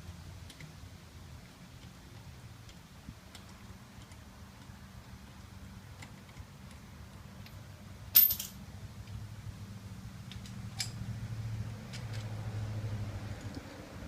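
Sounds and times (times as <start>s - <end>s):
metal tools clanking: 8.2s - 8.6s.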